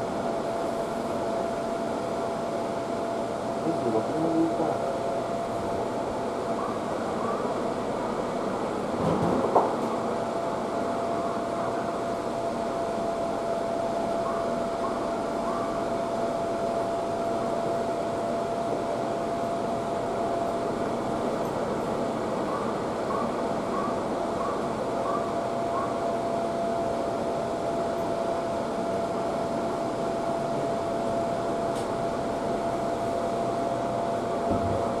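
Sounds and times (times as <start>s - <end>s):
train car hum: 0.0s - 35.0s.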